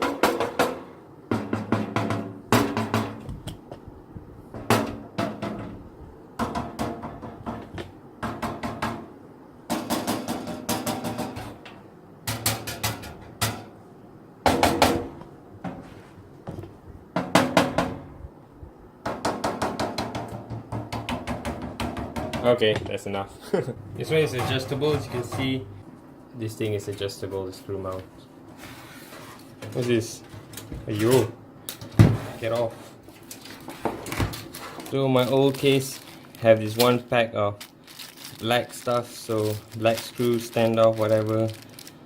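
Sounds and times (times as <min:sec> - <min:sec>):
knocking on metal pc case: 0:00.0 - 0:03.4, 0:04.5 - 0:05.8, 0:06.4 - 0:09.1, 0:09.7 - 0:11.6, 0:14.4 - 0:15.8, 0:16.5 - 0:18.1, 0:19.0 - 0:23.0.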